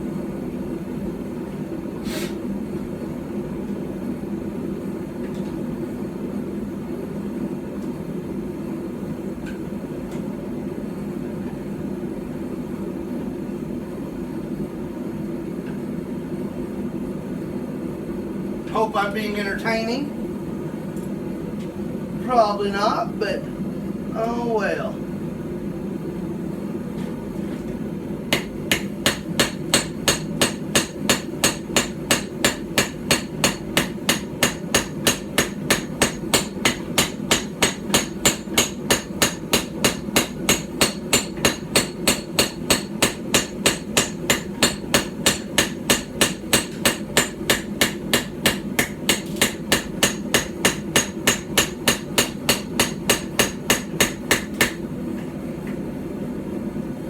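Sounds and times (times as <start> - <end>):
steady low hum: 0.0 - 57.0
hammer striking hot steel: 28.3 - 54.9.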